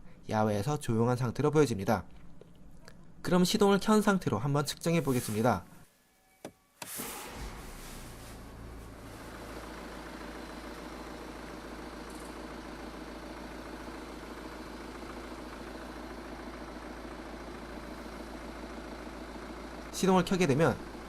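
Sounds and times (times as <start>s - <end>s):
diesel engine idling: 7.1s - 21.0s.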